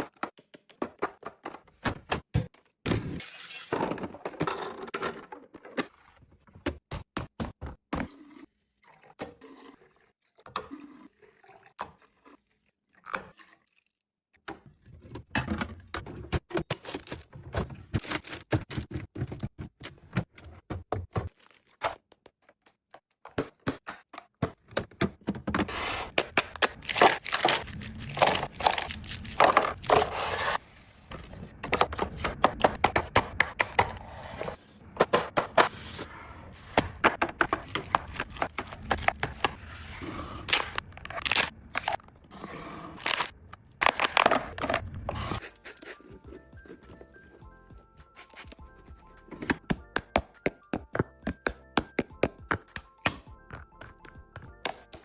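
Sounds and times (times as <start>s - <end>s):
containers knocking and scraping: 36.7s - 39.7s.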